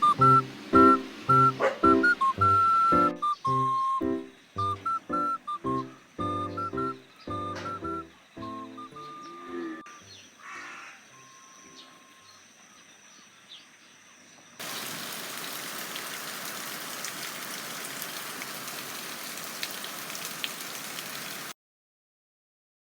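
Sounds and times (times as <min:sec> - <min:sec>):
raindrops ticking: 0:00.0 - 0:09.0, 0:14.6 - 0:21.5
steady rain falling: 0:00.0 - 0:09.0, 0:14.6 - 0:21.6.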